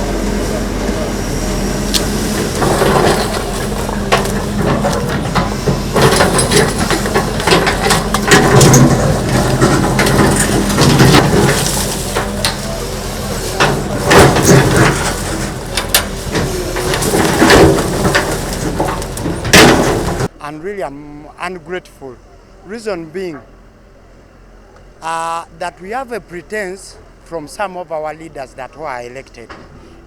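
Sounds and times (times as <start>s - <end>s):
engine hum: 0.0s - 30.0s
demolition crunching and cracking: 1.6s - 20.8s.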